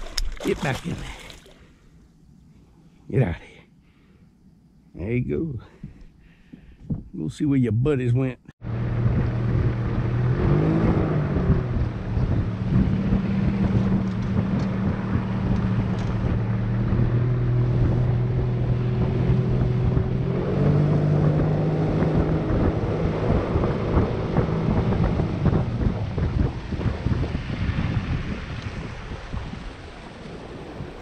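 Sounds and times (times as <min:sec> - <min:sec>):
outboard motor running: 0:08.6 - 0:29.8
wind rushing over microphone: 0:08.6 - 0:31.0.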